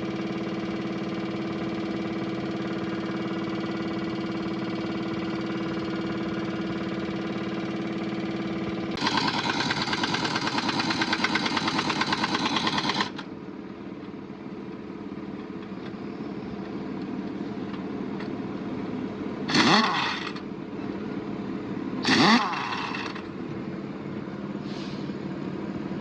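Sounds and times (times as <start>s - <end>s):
engine idling: 0.0s - 26.0s
rapidly pulsing machine rattle: 9.0s - 13.3s.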